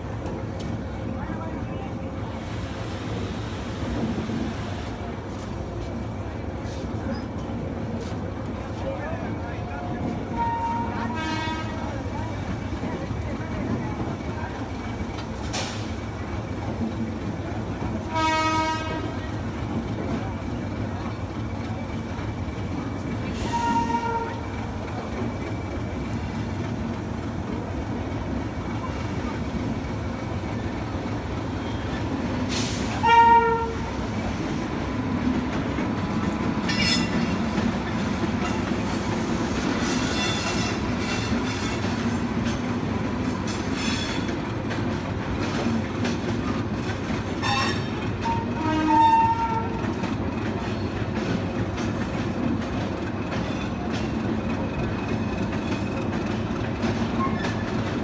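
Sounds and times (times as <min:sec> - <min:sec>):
train running: 0:00.0 - 0:58.0
locomotive horn blasts: 0:10.3 - 0:11.8, 0:18.1 - 0:19.2, 0:23.4 - 0:24.4, 0:33.0 - 0:33.9, 0:47.4 - 0:49.8.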